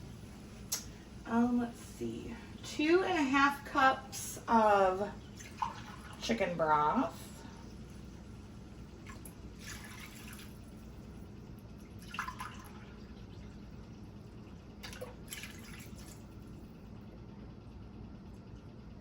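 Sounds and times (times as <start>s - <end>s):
steady low hum: 0.0s - 19.0s
broth splashing into a pan: 5.2s - 6.3s, 8.7s - 11.1s, 11.9s - 13.4s.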